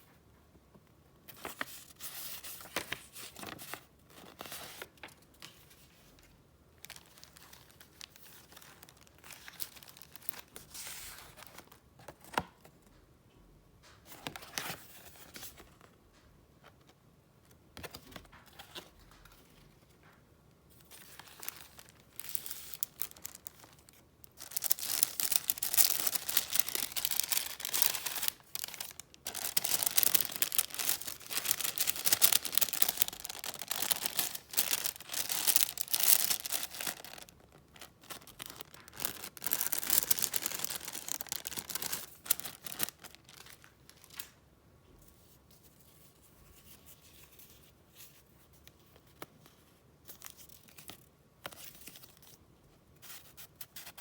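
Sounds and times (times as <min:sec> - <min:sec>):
paper rustling and crinkling: 0:01.3 - 0:12.7, 0:17.8 - 0:44.4.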